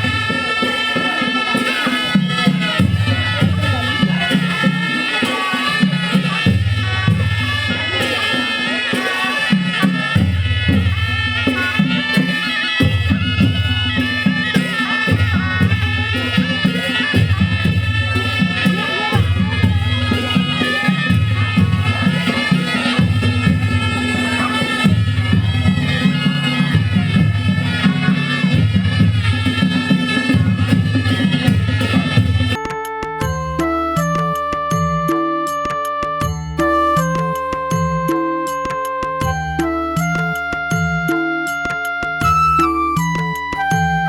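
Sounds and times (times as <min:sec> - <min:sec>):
steady percussion: 0:00.0 - 0:44.0
wind-like folk melody: 0:00.0 - 0:44.0.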